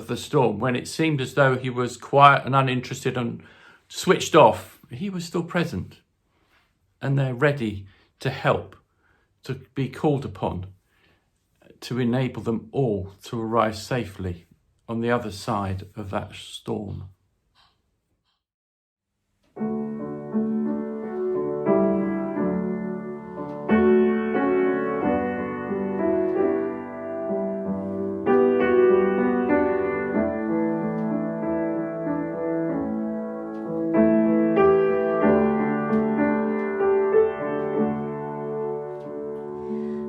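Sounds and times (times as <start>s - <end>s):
slow gentle piano music: 19.5s - 40.0s.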